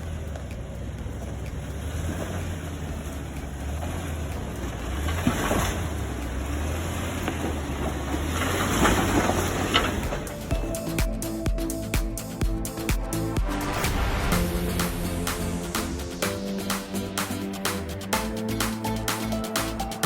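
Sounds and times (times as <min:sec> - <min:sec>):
vehicle engine rumbling: 0:00.0 - 0:19.2
rushing noise: 0:08.7 - 0:19.7.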